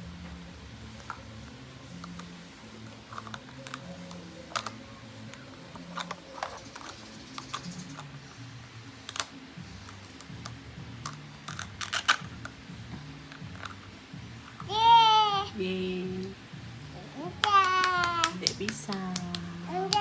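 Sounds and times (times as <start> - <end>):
plastic toy clicking and tapping: 3.1 - 8.2, 9.0 - 12.6, 13.3 - 13.9, 17.3 - 20.0.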